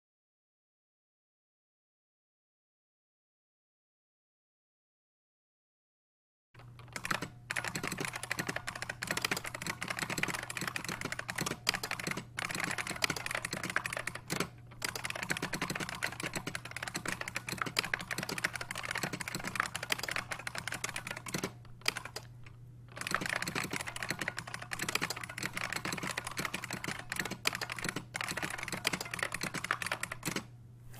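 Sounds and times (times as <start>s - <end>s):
low steady hum: 6.6s - 30.9s.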